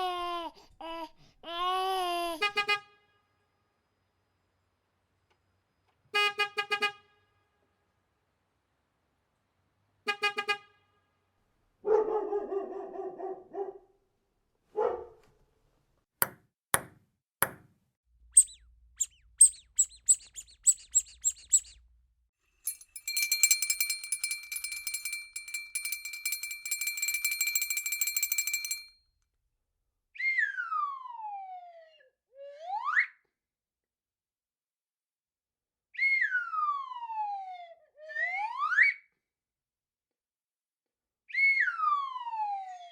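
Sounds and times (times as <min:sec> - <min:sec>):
sharp knocks: 0:16.2 - 0:17.8
high chirps: 0:18.3 - 0:21.9
sliding whistle: 0:18.4 - 0:21.8
long buzzing ring: 0:22.7 - 0:28.9.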